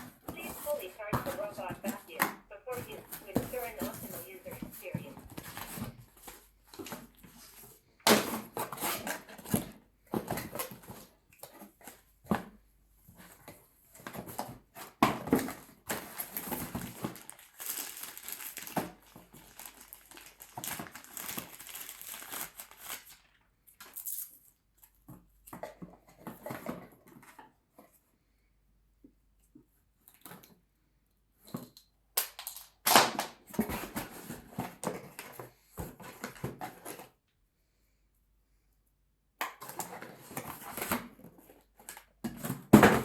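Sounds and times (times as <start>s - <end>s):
crinkling and rustling of handling: 0.0s - 28.1s.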